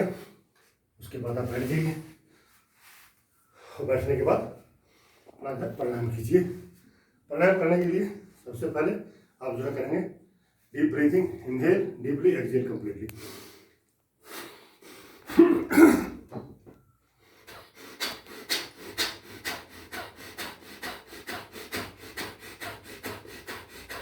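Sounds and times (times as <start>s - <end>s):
short sharp breaths: 13.1s - 15.4s, 17.0s - 24.0s
man breathing deeply: 13.2s - 15.4s, 17.1s - 24.0s.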